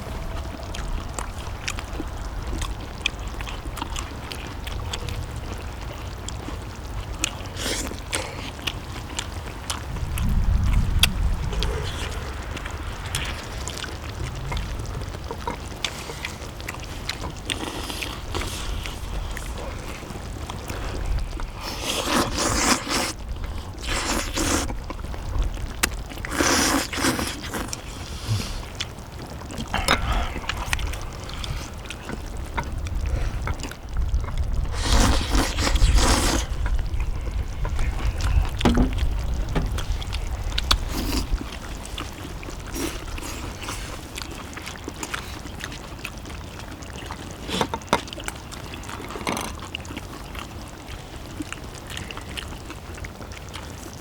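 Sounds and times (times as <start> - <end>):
steady low rumble: 0.0 - 7.0, 8.8 - 21.6, 27.7 - 44.2.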